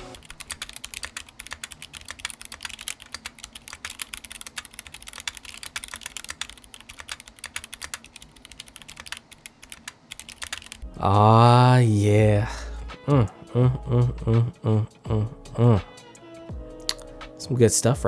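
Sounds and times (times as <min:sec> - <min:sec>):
mechanical keyboard typing: 0:00.1 - 0:10.8.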